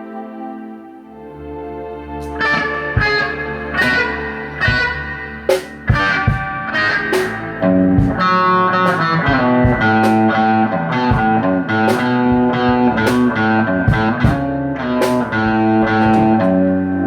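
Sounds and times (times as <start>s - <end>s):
electric guitar melody: 0.0s - 17.0s.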